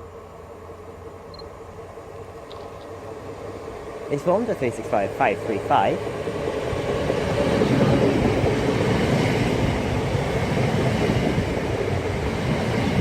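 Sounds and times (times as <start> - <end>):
train wheels rumbling: 0.0 - 13.0.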